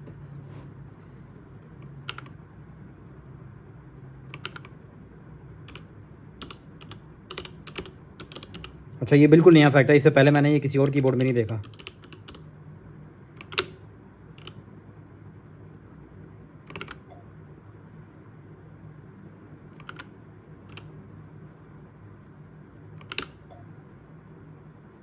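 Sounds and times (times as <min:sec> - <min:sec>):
mechanical keyboard keypress clicks: 0:02.1 - 0:02.4, 0:04.3 - 0:04.7, 0:06.4 - 0:08.8, 0:10.8 - 0:12.4, 0:13.4 - 0:13.8, 0:16.7 - 0:17.1, 0:19.8 - 0:20.1, 0:20.7 - 0:20.9, 0:23.0 - 0:23.5.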